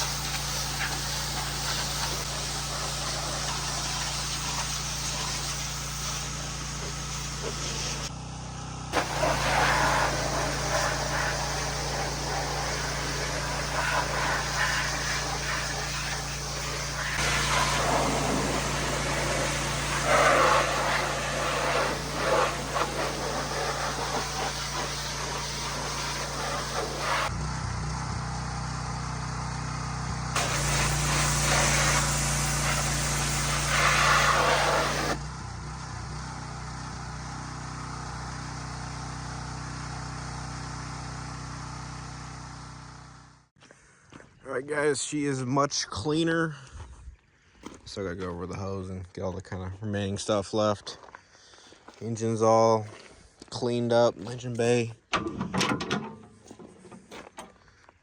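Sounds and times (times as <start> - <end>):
pressure washer water jet hiss: 0.0 - 8.1, 9.0 - 27.3, 30.4 - 35.2
engine hum: 0.0 - 43.5, 54.2 - 58.0.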